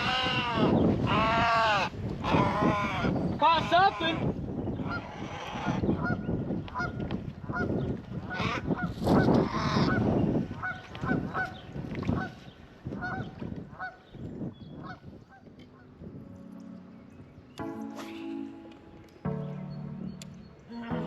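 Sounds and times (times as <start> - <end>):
geese honking: 0.0 - 6.2, 6.8 - 12.4, 13.0 - 14.0.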